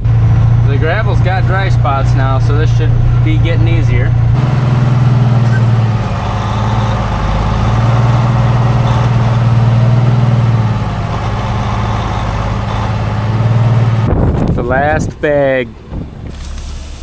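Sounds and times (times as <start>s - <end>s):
heavy vehicle engine droning: 0.0s - 17.0s.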